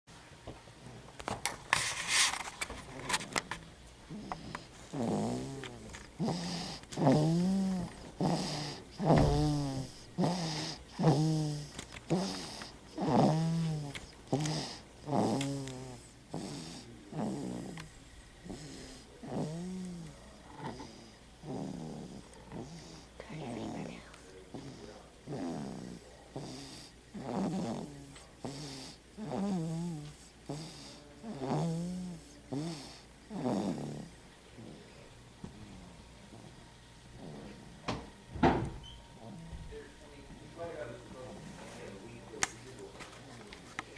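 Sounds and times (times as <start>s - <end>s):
soft breaths: 1.8s - 38.0s, 38.8s - 43.9s
baby snoring: 2.9s - 35.1s, 36.3s - 38.0s, 38.8s - 39.9s.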